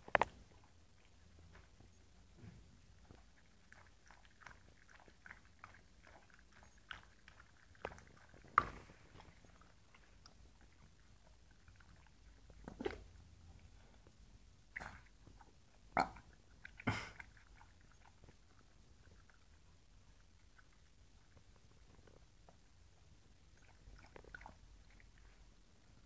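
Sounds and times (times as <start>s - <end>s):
puppy chewing: 0.0s - 26.0s.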